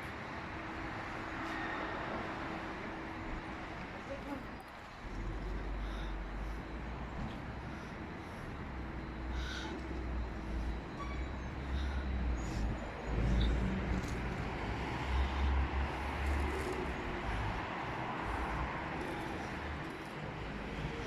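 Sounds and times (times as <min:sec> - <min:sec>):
road traffic noise: 0:00.0 - 0:21.0
vehicle passing: 0:11.6 - 0:21.0.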